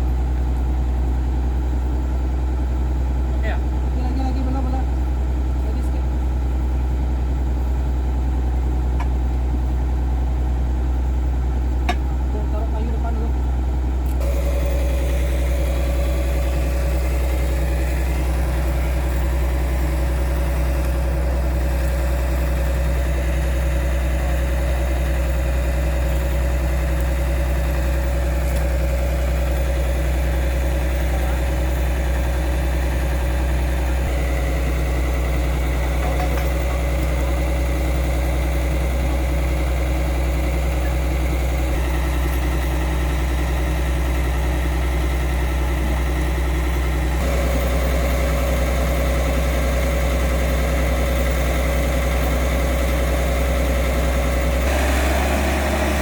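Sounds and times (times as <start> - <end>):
excavator diesel engine idling: 0.0 - 56.0.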